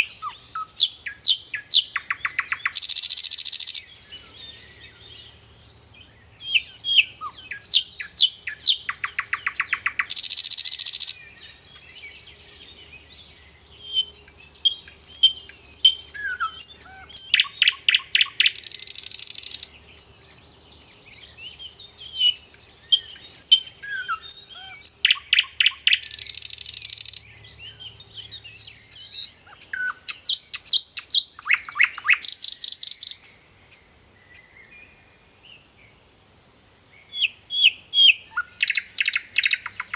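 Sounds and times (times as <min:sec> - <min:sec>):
bird singing with buzzing trill: 0:00.0 - 0:35.7, 0:37.0 - 0:39.9.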